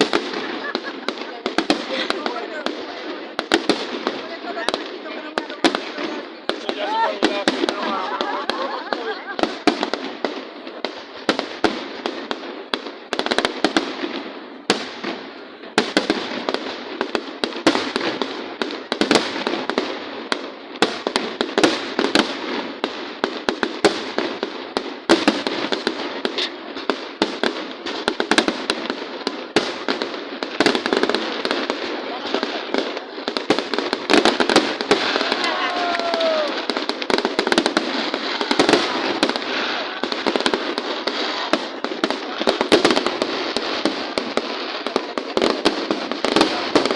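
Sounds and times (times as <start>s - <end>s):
fireworks bangs and crackles: 0.0s - 46.9s.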